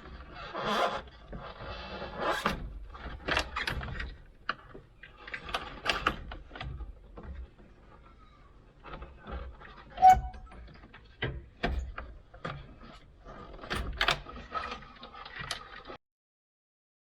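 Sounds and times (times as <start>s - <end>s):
parts and tools clicking and scraping: 8.7s - 16.0s.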